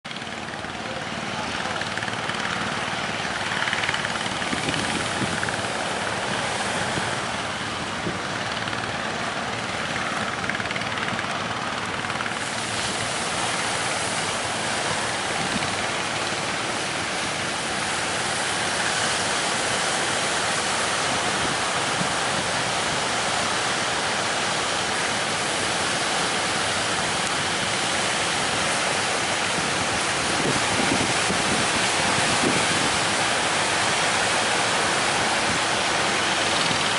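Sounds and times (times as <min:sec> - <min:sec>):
boat engine running: 0:00.0 - 0:36.9
sea waves: 0:00.1 - 0:36.9
strong wind on microphone: 0:03.9 - 0:08.4, 0:29.0 - 0:36.9.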